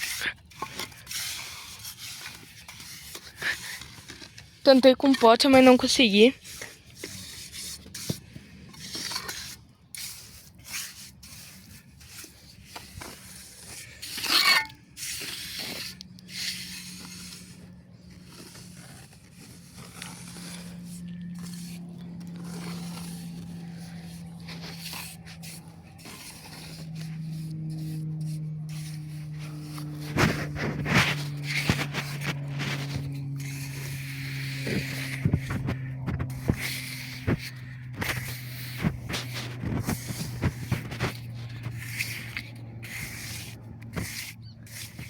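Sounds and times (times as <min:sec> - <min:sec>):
trowel scraping wet mortar: 0:00.0 - 0:45.0
low steady drone: 0:13.8 - 0:45.0.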